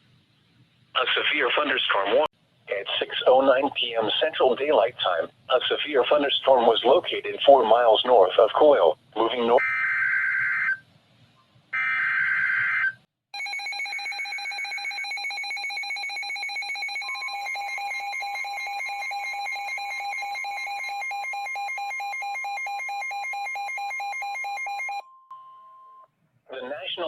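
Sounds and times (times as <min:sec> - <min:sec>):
rapidly pulsing electronic alarm: 0:09.2 - 0:10.8, 0:11.8 - 0:25.0
steady single-pitch alarm tone: 0:11.8 - 0:25.9.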